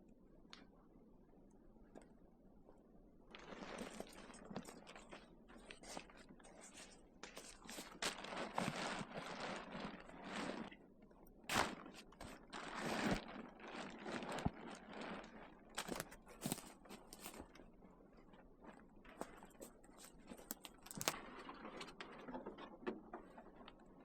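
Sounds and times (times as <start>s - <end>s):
gear rustling and scraping: 11.5s - 17.7s, 18.7s - 24.0s.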